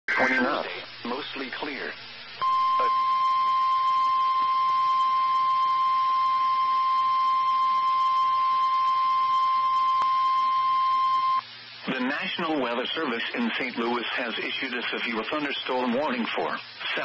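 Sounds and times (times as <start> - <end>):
faint radio hiss: 0.1 - 6.0, 11.4 - 17.0
steady alarm beep: 2.4 - 11.4.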